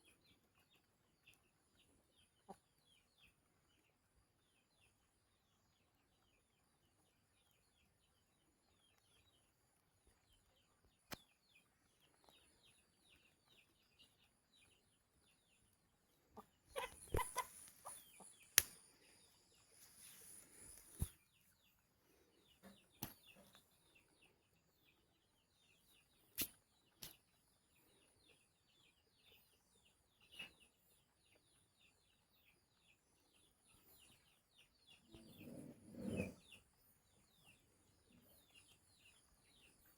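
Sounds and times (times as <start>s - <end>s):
chickens clucking: 2.2s - 3.0s, 16.2s - 18.8s.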